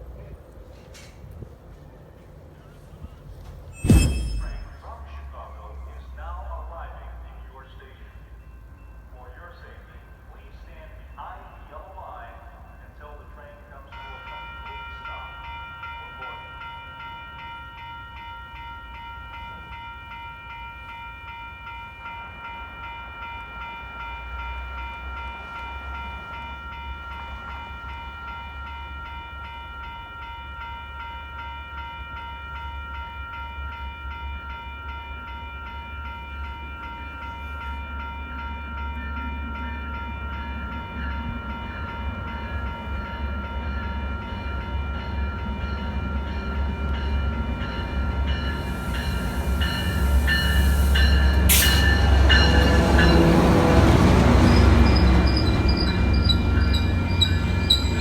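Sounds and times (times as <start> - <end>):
train rumble: 0.0 - 17.5, 36.4 - 58.0
crossing bells ringing: 3.4 - 58.0.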